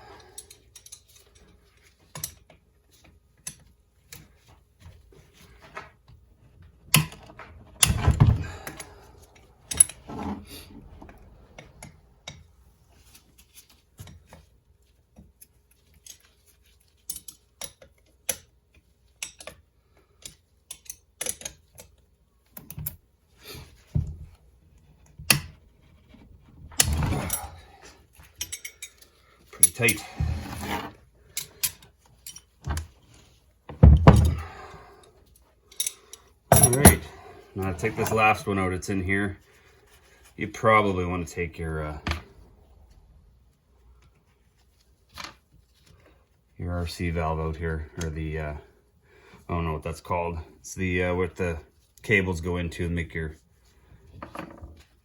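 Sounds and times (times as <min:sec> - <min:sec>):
metal tools clinking: 0:07.0 - 0:12.5, 0:26.0 - 0:32.9, 0:35.7 - 0:38.6.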